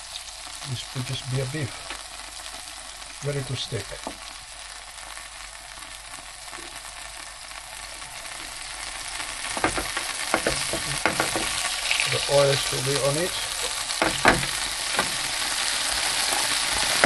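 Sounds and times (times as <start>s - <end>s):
steak sizzling in a frying pan: 0.0s - 17.0s
sharp knocks: 9.5s - 11.6s, 14.0s - 15.3s.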